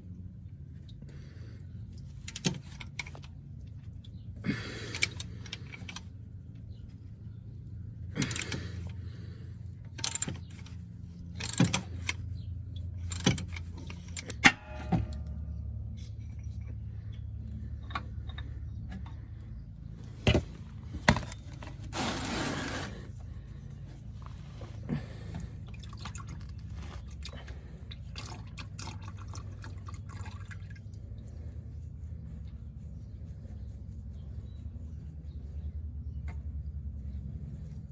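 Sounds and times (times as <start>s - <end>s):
steady low hum: 0.0s - 37.9s
metal tools clinking: 13.0s - 15.3s.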